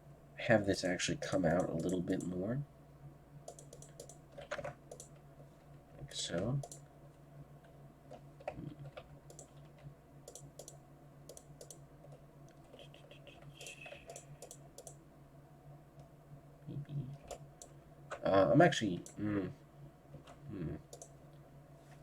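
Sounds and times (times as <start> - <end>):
low electrical hum: 0.0 - 22.0
mouse and keyboard clicks: 1.5 - 2.3, 3.5 - 5.2, 6.6 - 6.8, 8.1 - 15.0.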